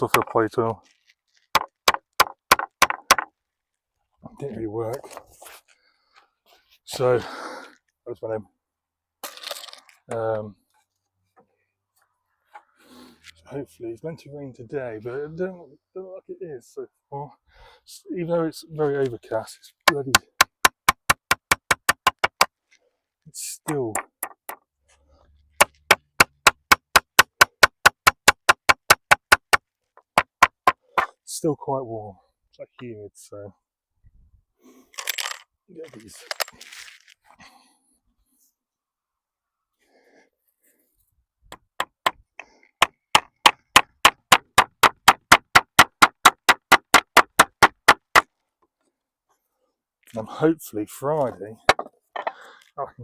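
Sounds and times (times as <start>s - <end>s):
hammer driving nail into timber: 1.5s - 3.3s, 19.9s - 22.5s, 25.6s - 31.1s, 42.8s - 48.3s.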